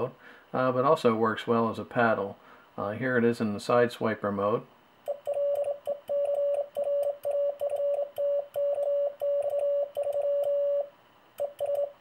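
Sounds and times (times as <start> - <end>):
morse code sidetone: 5.1 - 12.0.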